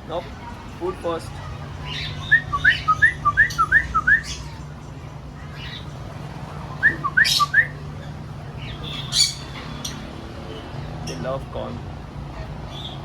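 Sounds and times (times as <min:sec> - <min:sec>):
bird chirps and squawks: 0:06.9 - 0:07.8, 0:08.6 - 0:10.1.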